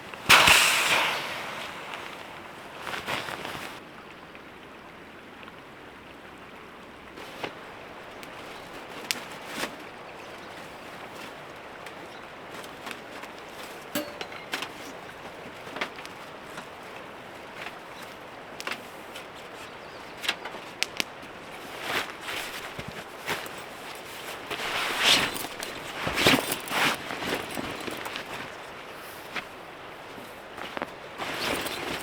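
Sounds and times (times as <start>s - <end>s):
rustling: 0.0s - 3.8s, 7.2s - 32.0s
camp gear knocking and clicking: 11.3s - 19.3s, 20.2s - 28.7s, 30.6s - 32.0s.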